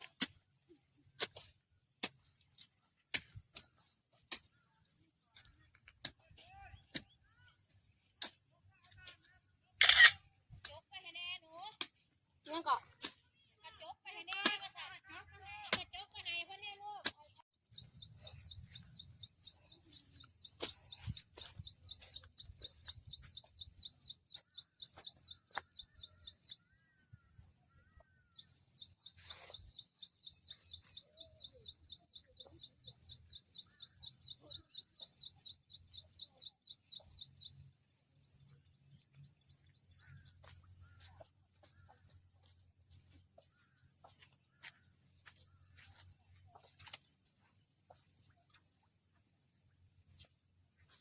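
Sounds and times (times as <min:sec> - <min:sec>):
short high bird chirps: 0:09.8 - 0:10.2.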